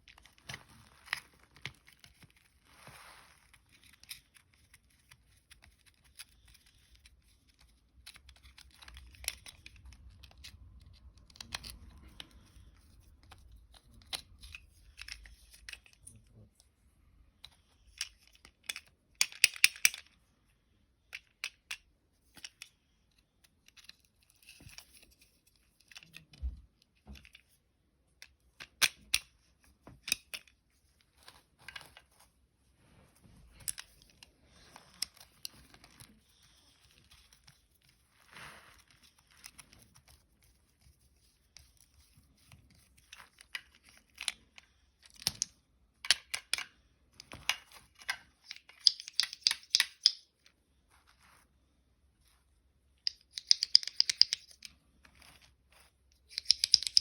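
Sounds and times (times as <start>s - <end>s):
clicks and taps of small objects: 3.8s - 16.7s, 17.4s - 20.2s, 21.0s - 32.1s, 41.5s - 50.5s, 53.0s - 57.0s.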